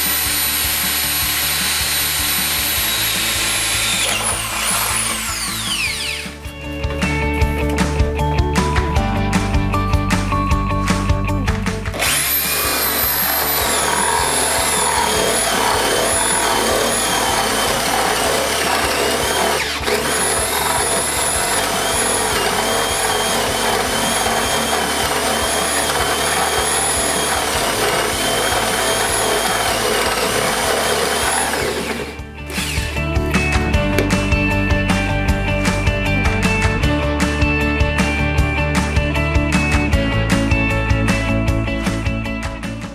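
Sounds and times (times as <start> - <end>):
drill motor whining: 0.0 - 6.5, 11.7 - 34.1
background music: 0.0 - 42.9.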